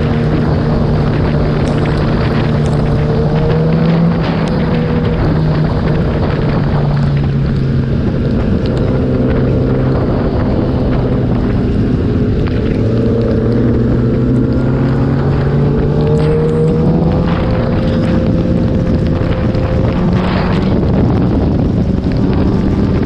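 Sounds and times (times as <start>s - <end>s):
motorcycle engine running: 0.0s - 23.0s
wind noise on microphone: 0.0s - 23.0s.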